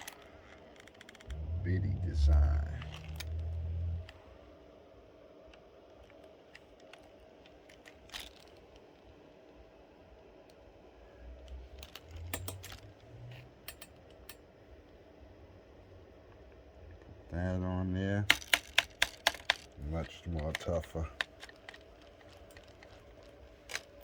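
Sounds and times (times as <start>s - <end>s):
faint steady hum: 0.0s - 24.0s
soft low thumps: 1.3s - 4.1s
hard plastic clicks and taps: 12.2s - 12.8s, 18.3s - 23.0s.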